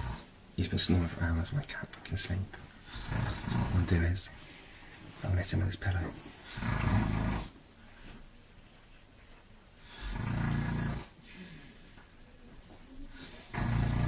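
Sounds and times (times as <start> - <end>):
man snoring loudly: 0.0 - 0.3, 2.9 - 4.0, 6.6 - 7.6, 9.9 - 11.1, 13.4 - 14.0.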